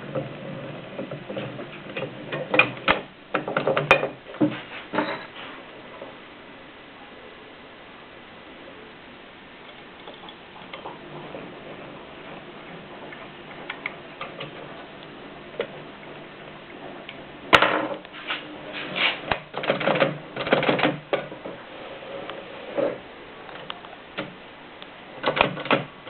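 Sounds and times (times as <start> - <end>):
typewriter mechanism clattering: 19.3 - 21.3, 25.2 - 25.9.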